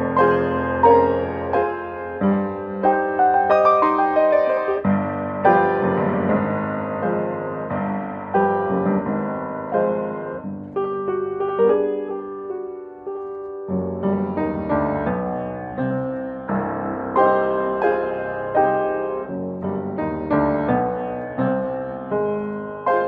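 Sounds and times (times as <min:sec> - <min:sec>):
solo piano playing: 0:00.0 - 0:23.0.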